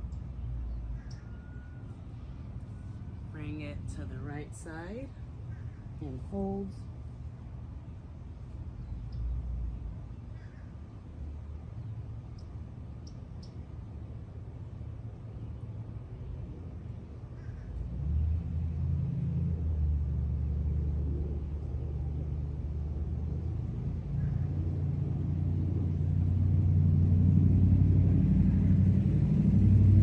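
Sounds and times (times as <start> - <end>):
low engine rumble: 0.0 - 30.0.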